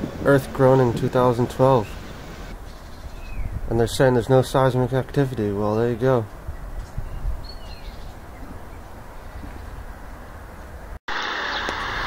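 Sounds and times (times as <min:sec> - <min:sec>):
loud steady droning: 0:11.1 - 0:12.0.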